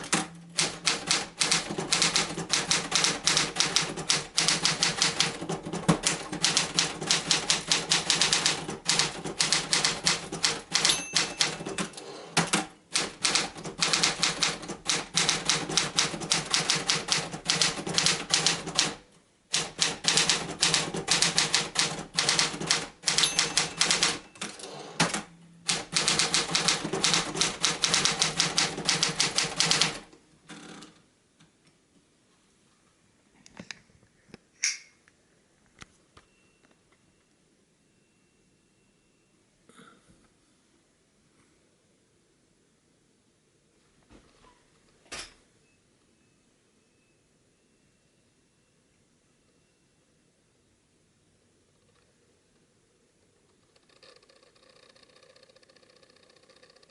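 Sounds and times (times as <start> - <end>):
typewriter keystrokes: 0.0 - 30.1.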